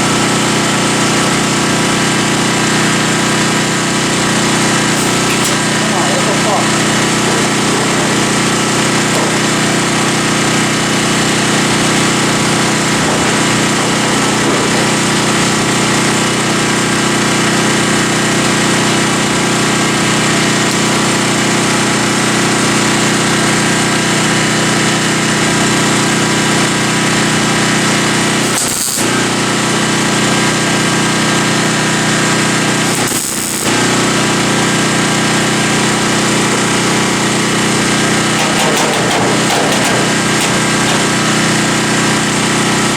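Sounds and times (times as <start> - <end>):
power tool working sheet metal: 0.0 - 42.9.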